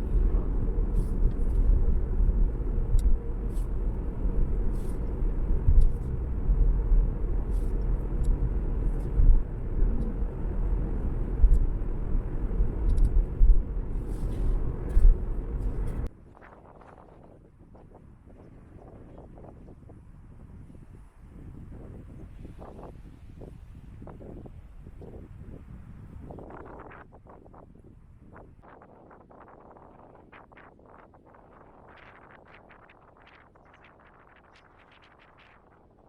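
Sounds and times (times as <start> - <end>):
steady low rumbling: 0.0 - 16.1.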